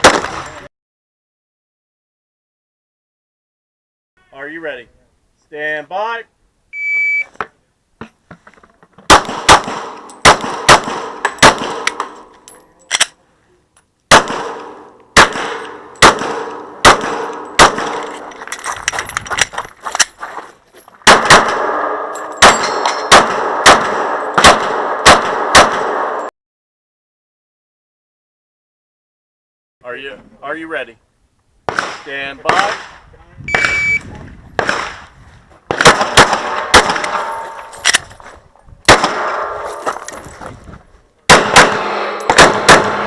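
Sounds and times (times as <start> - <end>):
pistol shots cracking: 9.1 - 12.3, 14.1 - 18.3, 21.0 - 26.2, 31.7 - 33.0, 34.6 - 35.1, 35.7 - 37.5, 38.9 - 39.7, 41.3 - 43.0.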